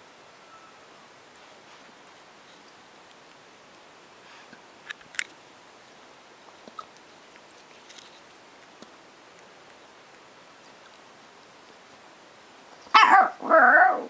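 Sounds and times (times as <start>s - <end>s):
puppy hiccuping: 12.9s - 14.0s.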